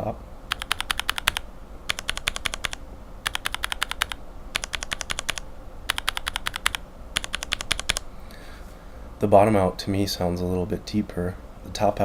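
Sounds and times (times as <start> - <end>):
keyboard switch clacking: 0.5 - 8.0.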